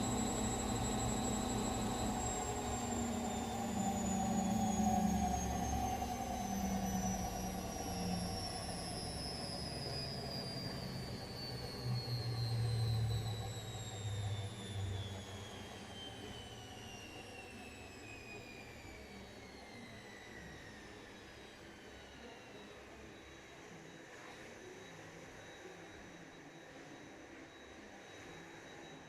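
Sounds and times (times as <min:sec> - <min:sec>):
low rumble: 0:00.0 - 0:03.9
washing machine motor whine: 0:00.0 - 0:23.0.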